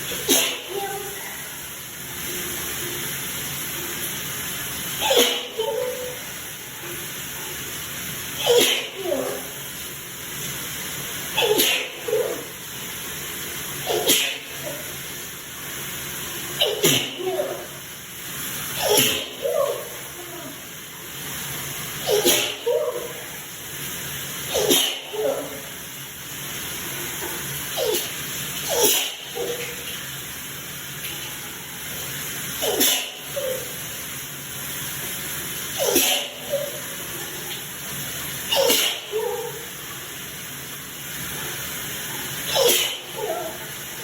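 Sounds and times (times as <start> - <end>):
shower spray running: 0.0 - 44.0
person sneezing: 0.1 - 1.2, 5.0 - 6.2, 8.4 - 9.6, 11.3 - 12.5, 13.8 - 15.0, 16.6 - 17.8, 18.8 - 20.6, 22.0 - 23.4, 24.5 - 25.7, 27.7 - 29.9, 32.6 - 33.8, 35.8 - 36.8, 38.5 - 39.7, 42.4 - 43.7.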